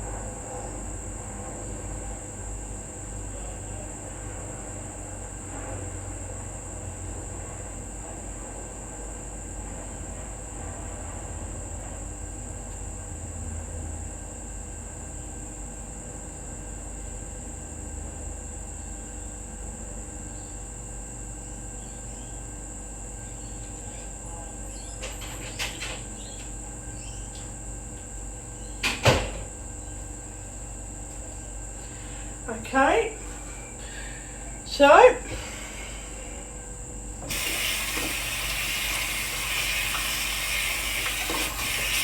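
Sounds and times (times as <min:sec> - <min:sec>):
cricket trill: 0:18.7 - 0:28.8.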